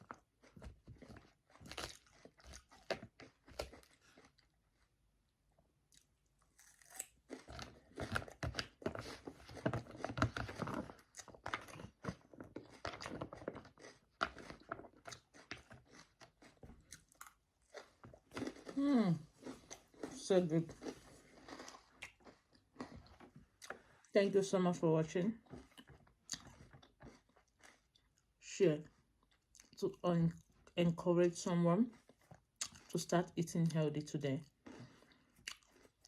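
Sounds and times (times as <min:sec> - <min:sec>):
chewing salad crunching: 0:00.0 - 0:05.0, 0:05.9 - 0:24.2, 0:25.1 - 0:33.5, 0:34.4 - 0:36.0.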